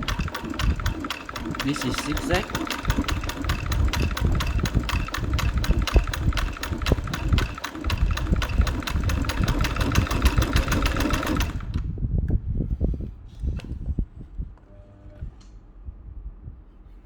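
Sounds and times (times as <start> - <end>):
needle mechanism clicking: 0.0 - 11.8
sewing machine running: 0.0 - 11.9.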